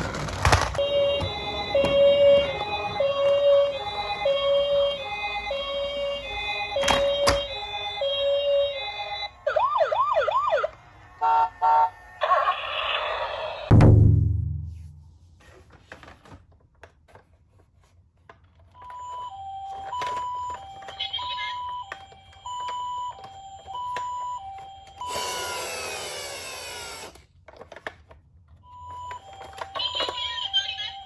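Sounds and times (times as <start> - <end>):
toy two-tone siren: 0.8 - 13.0, 18.8 - 27.1, 28.6 - 31.0
toy handling clicks and knocks: 27.0 - 30.8.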